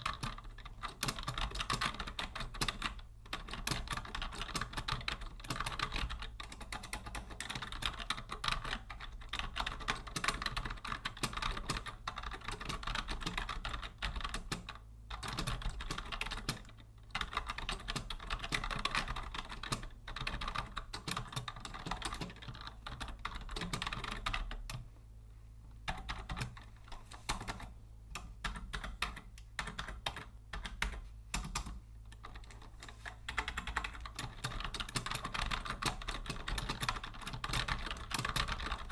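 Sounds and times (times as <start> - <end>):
keyboard typing clicks: 25.9 - 38.9.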